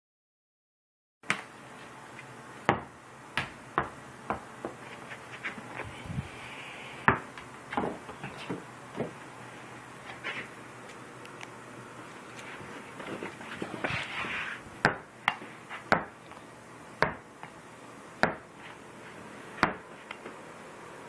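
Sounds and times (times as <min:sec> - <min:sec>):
ball knocking and bouncing: 0:07.1 - 0:09.1.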